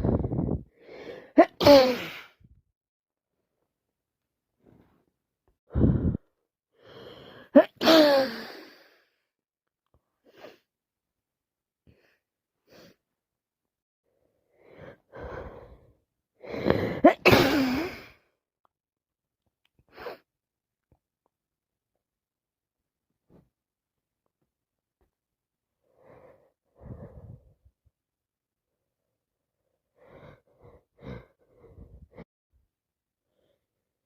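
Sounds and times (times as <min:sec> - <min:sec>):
woman sneezing: 0:01.4 - 0:02.3, 0:07.6 - 0:08.5, 0:17.0 - 0:18.0.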